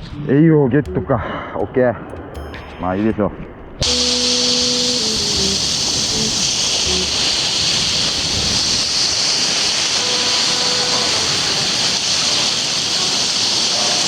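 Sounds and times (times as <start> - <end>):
waves washing onto shore: 3.8 - 14.0.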